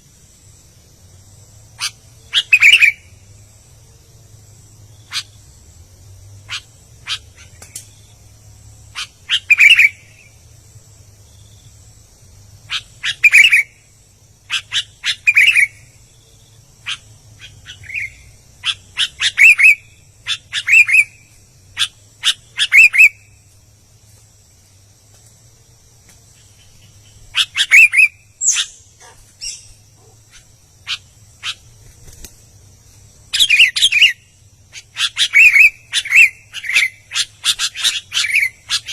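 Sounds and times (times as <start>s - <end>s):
bulbul singing warbling phrases: 8.9s - 10.4s, 16.8s - 23.4s, 26.6s - 31.7s, 33.3s - 38.9s.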